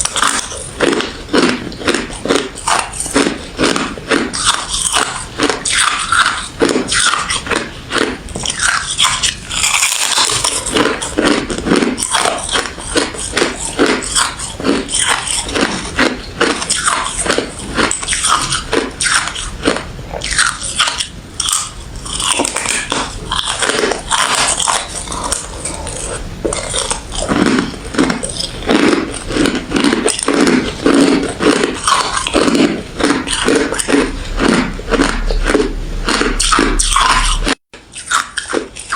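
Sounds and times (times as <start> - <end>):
ice being chewed: 0.0 - 38.9.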